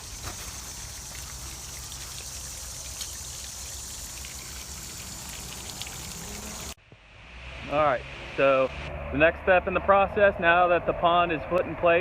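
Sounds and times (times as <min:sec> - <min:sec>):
fountain water splashing: 0:00.0 - 0:06.8.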